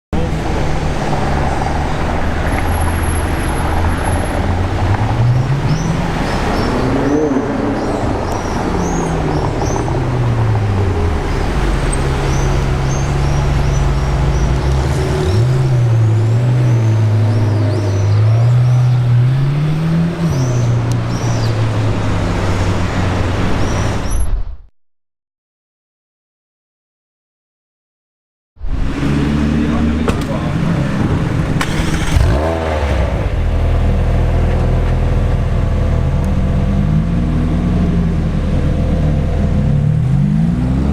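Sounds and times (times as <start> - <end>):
sports car engine revving: 28.8 - 40.9.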